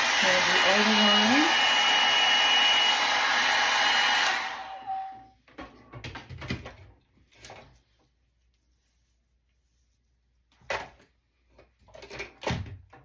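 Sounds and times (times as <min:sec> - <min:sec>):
hair dryer blowing: 0:00.0 - 0:05.2.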